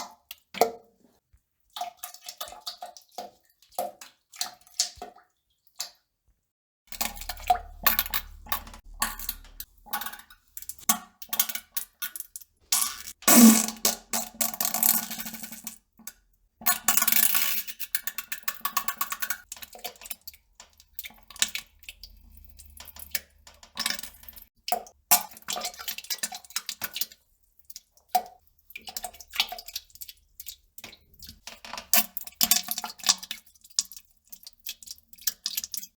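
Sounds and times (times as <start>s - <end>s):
wet spluttering farts: 12.8s - 14.0s.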